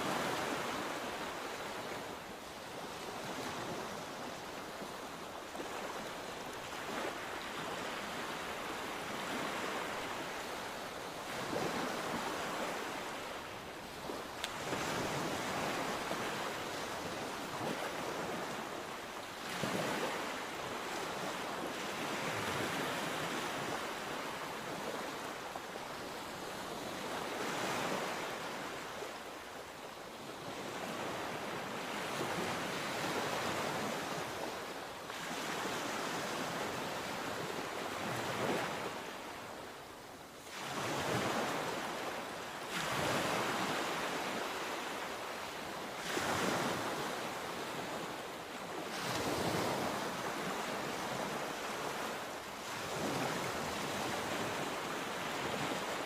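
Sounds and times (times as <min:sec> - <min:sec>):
sea waves breaking: 0:03.1 - 0:25.4, 0:40.4 - 0:56.0.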